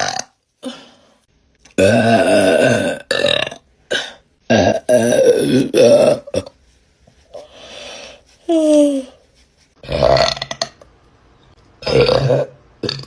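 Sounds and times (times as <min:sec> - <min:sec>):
woman burping: 0:01.8 - 0:06.5, 0:11.8 - 0:13.0.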